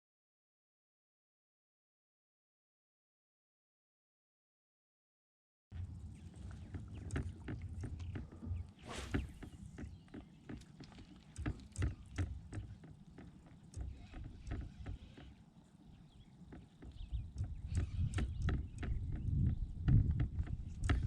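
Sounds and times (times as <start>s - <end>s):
knocks and clicks on kayak: 6.8s - 15.4s, 16.4s - 21.0s.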